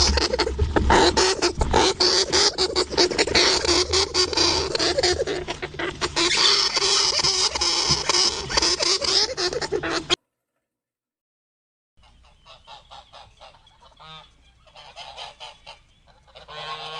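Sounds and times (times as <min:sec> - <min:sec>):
hamster squeaks: 0:00.0 - 0:10.2.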